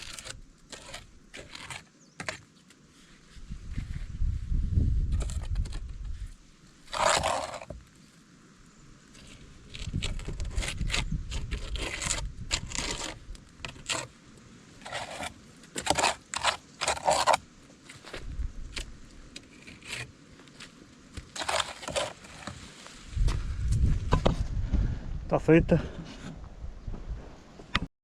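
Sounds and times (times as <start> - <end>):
trowel scraping mortar: 0.0 - 2.8, 5.1 - 7.9, 9.1 - 23.0.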